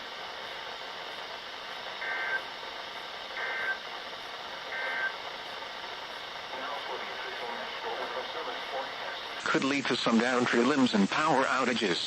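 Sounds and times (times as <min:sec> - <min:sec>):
radio hiss: 0:00.0 - 0:12.0
warbling data tone bursts: 0:04.7 - 0:05.2.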